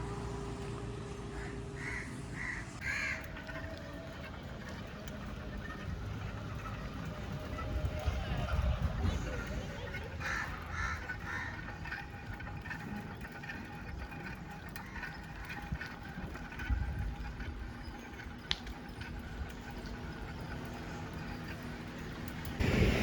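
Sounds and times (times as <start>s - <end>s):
faint street sounds: 0.0s - 23.0s
road noise: 0.0s - 23.0s
wind on microphone: 7.4s - 10.9s, 22.6s - 23.0s.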